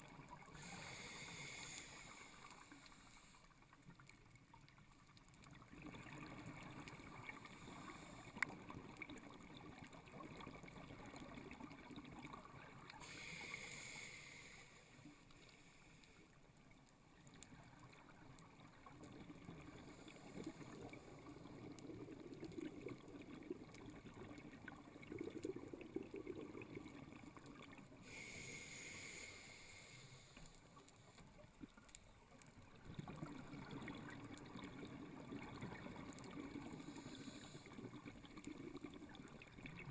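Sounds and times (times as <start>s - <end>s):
hissing inhale through regulator: 0.3s - 3.7s, 7.2s - 8.5s, 12.9s - 16.4s, 27.7s - 31.2s, 36.5s - 38.1s.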